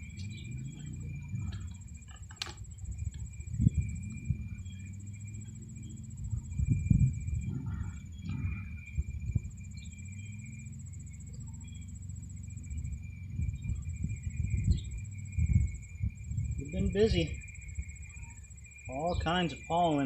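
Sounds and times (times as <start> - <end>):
crickets trilling: 0.0 - 20.0
low hum of honeybees: 0.0 - 20.0
knocks and rustling of hive frames: 1.4 - 3.0.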